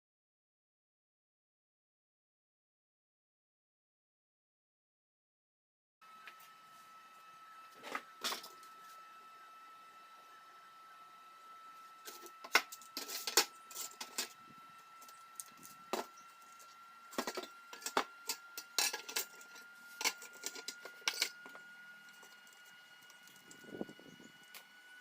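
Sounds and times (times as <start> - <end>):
faint steady high tone: 6.0 - 17.9.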